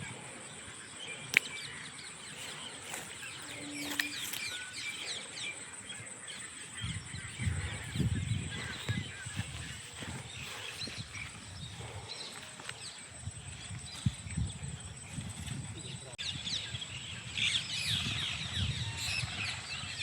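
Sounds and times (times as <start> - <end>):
small birds chirping: 0.0 - 20.0
sharp click: 1.3 - 1.6.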